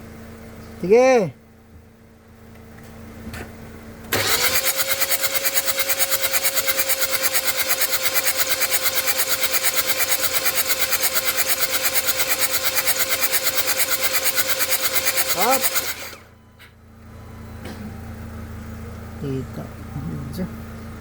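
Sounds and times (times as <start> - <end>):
starter motor cranking engine: 4.1 - 16.4.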